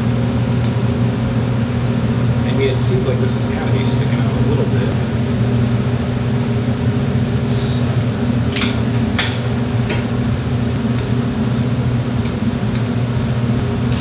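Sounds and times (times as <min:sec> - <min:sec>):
machine hum: 0:13.6 - 0:14.0.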